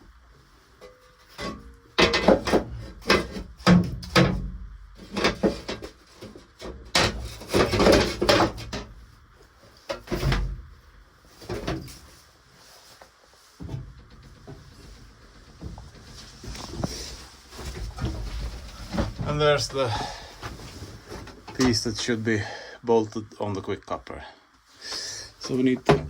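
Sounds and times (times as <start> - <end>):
hard objects knocking and scraping: 0.8 - 8.9, 13.6 - 21.7.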